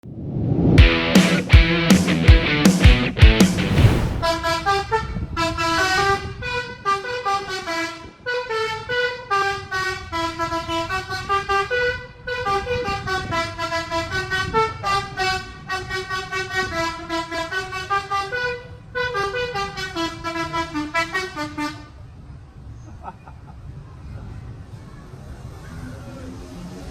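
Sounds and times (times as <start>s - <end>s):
multi-tone musical air horn: 4.2s - 22.0s
bus running and road noise: 23.5s - 26.9s.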